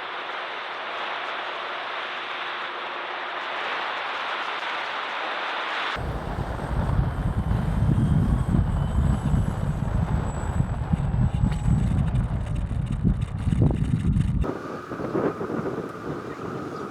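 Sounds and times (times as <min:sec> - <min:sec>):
high whine of electric motors: 0:00.0 - 0:16.9
wind buffeting microphone: 0:06.0 - 0:16.9.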